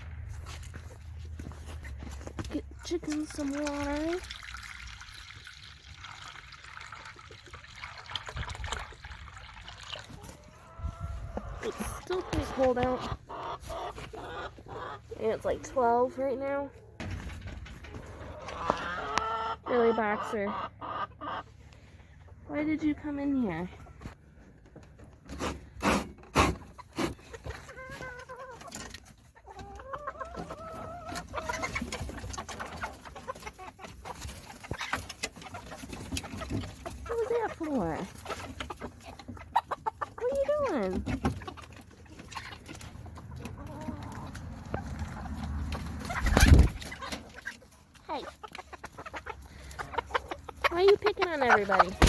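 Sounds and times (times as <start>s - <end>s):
chickens clucking: 0.0s - 4.4s, 5.0s - 52.0s
water trickling: 2.8s - 10.2s.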